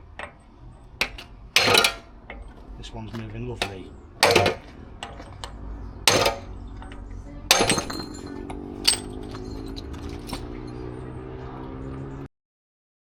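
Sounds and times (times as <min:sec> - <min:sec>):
metal-on-metal strikes: 0:01.0 - 0:02.5, 0:03.6 - 0:05.3, 0:06.0 - 0:06.6, 0:07.5 - 0:10.4.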